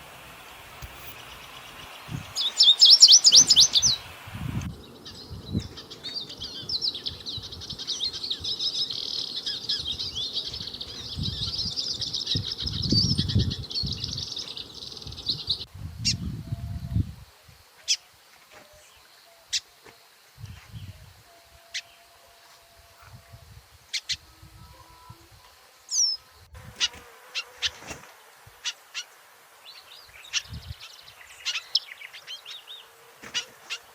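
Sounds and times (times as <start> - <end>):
small birds chirping: 0.0 - 17.0, 23.9 - 33.9.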